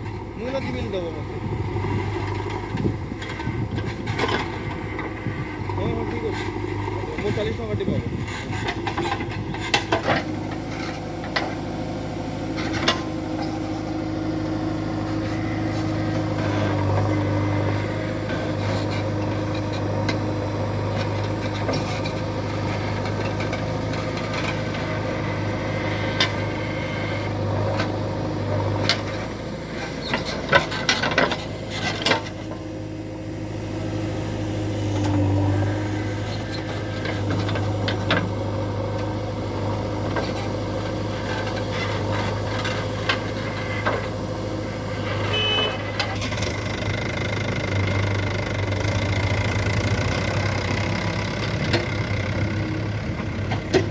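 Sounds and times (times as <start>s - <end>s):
heavy machinery diesel engine running: 0.0s - 53.9s.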